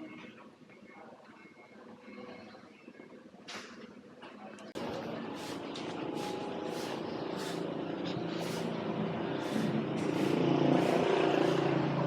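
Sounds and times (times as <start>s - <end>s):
vehicle engine running: 4.8s - 12.0s.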